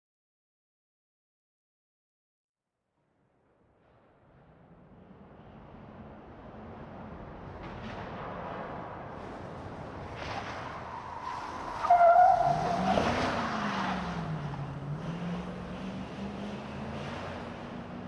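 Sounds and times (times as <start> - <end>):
truck engine rumbling and revving: 5.2 - 18.0.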